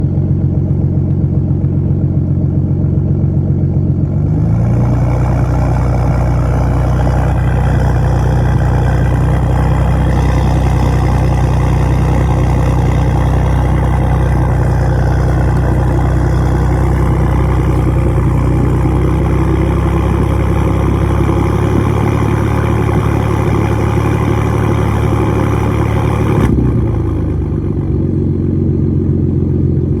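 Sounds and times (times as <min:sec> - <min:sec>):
car engine running: 0:00.0 - 0:30.0
rough noisy exhaust sound: 0:00.0 - 0:30.0.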